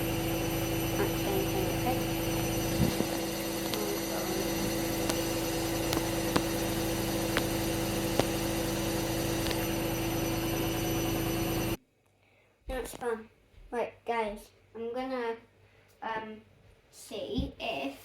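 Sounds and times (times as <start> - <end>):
drum ticking: 0.0 - 11.5
washer dryer spinning hum: 0.0 - 11.8.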